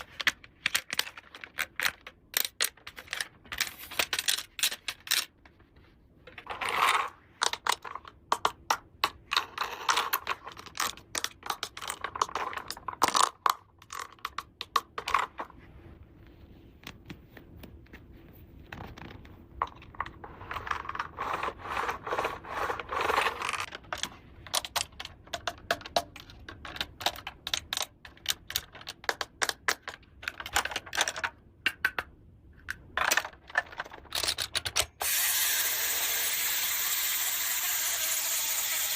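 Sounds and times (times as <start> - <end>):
plastic toy pieces clicking: 0.0 - 5.3, 6.9 - 15.3, 19.6 - 35.0
scraping and rustling: 15.3 - 23.7.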